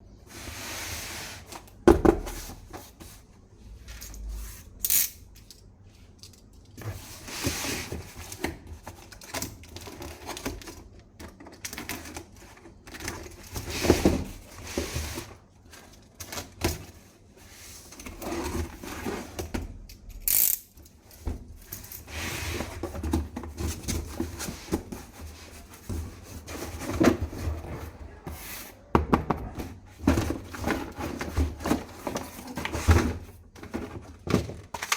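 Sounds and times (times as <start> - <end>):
plastic parts clicking and rattling: 4.8 - 6.9, 8.2 - 14.1, 33.6 - 34.9.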